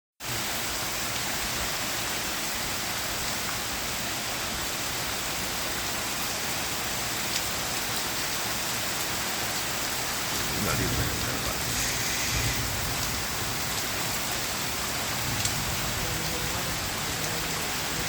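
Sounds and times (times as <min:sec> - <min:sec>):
heavy rain falling: 0:00.3 - 0:18.0.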